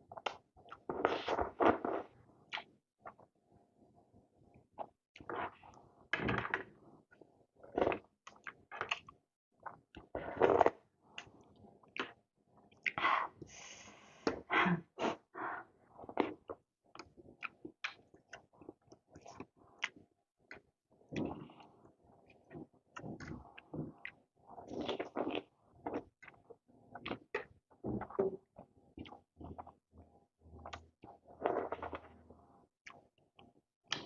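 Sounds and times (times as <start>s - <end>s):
slurping and chewing noodles: 7.6s - 13.0s, 15.9s - 29.8s, 30.5s - 33.1s.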